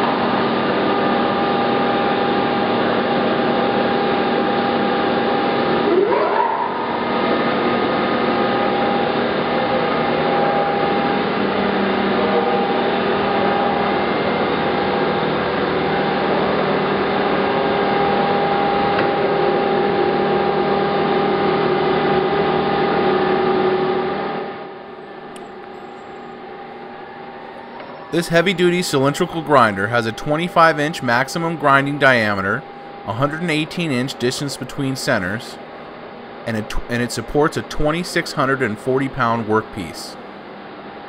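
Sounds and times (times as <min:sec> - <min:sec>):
grinder machine humming: 0:00.0 - 0:41.0.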